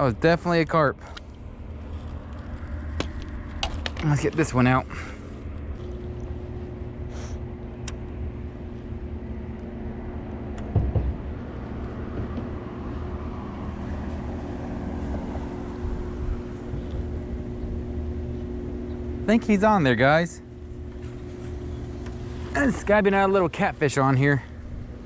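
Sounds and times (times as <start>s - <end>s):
low mechanical rumble: 0.0s - 25.0s
brief knock: 10.7s - 11.2s.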